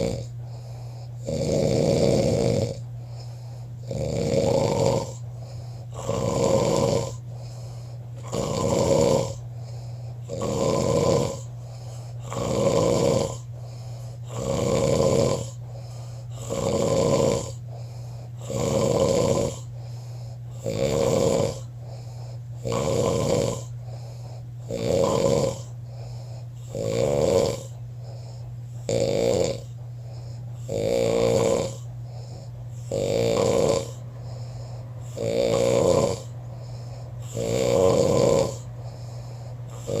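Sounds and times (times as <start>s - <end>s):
person snoring: 0.0s - 40.0s
steady low hum: 0.0s - 40.0s.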